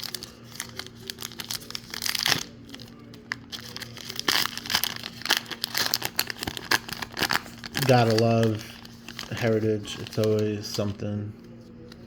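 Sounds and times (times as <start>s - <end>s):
wrapper crinkling and tearing: 0.0s - 11.0s
faint steady hum: 0.0s - 12.0s.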